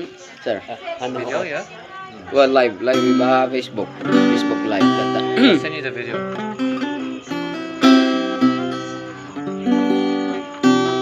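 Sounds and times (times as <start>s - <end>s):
acoustic guitar chords: 2.2s - 11.0s.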